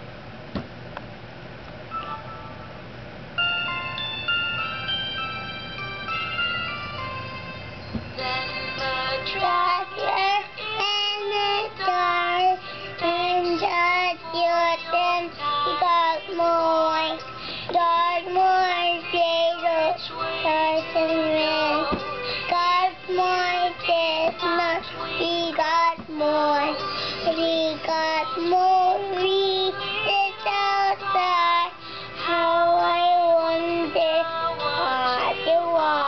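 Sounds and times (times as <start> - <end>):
chime-like tones: 1.9 - 2.8, 3.4 - 8.9
music: 1.9 - 36.0
child singing: 8.2 - 36.0.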